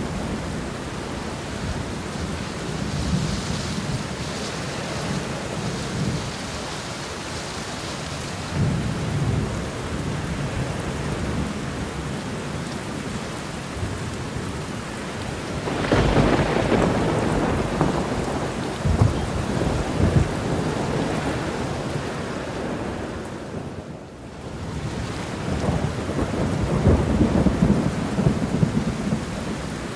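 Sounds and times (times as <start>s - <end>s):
heavy rain: 0.0s - 29.9s
thunder rumbling: 13.8s - 29.9s.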